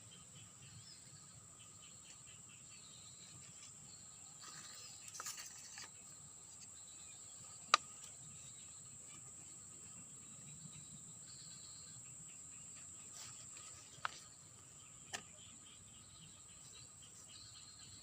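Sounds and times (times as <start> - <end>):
insects shrilling: 2.8 - 8.7.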